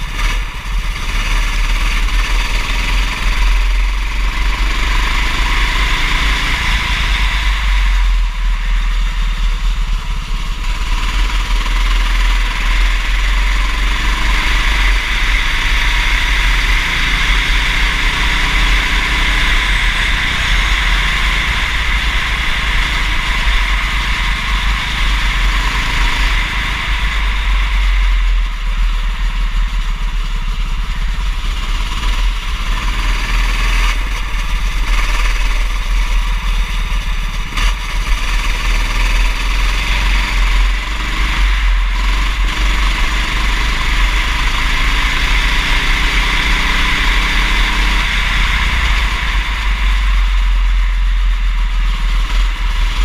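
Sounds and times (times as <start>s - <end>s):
deep rumble: 0.0s - 53.0s
kart engine racing: 0.0s - 53.0s.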